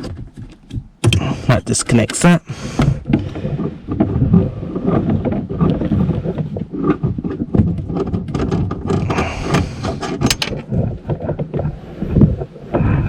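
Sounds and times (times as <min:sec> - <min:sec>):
tools clicking and rattling: 0:09.1 - 0:10.6.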